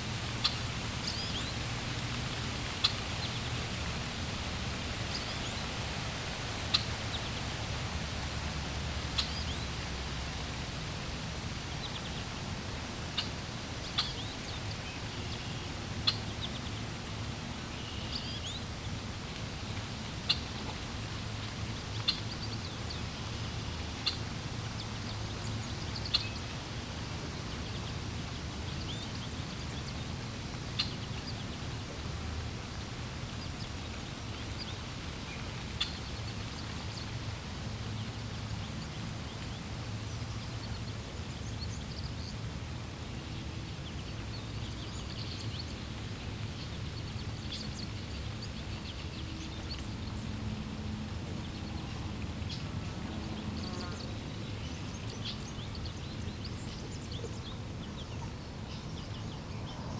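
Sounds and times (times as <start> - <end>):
water flowing: 0.0 - 59.5
birds chirping: 0.2 - 10.6.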